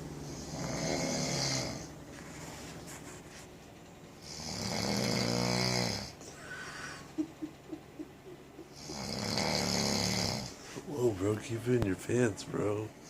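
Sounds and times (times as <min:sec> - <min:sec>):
man snoring: 0:00.2 - 0:01.9, 0:04.2 - 0:06.9, 0:08.7 - 0:10.6.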